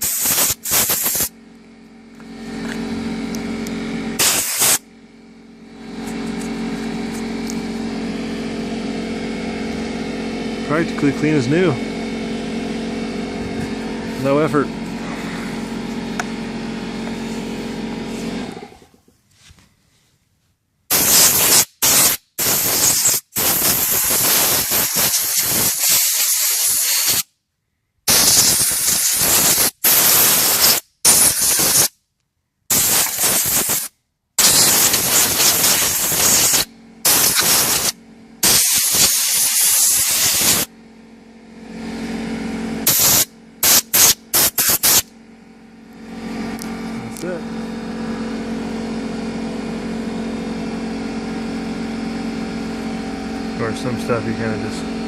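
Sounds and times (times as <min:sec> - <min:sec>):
air blow gun hissing blasts: 0:00.0 - 0:01.3, 0:04.2 - 0:04.8, 0:20.9 - 0:27.3, 0:28.1 - 0:31.9, 0:32.7 - 0:40.7, 0:42.8 - 0:45.0
air compressor motor running: 0:00.0 - 0:19.1, 0:20.8 - 0:27.3, 0:28.0 - 0:32.0, 0:32.6 - 0:55.0.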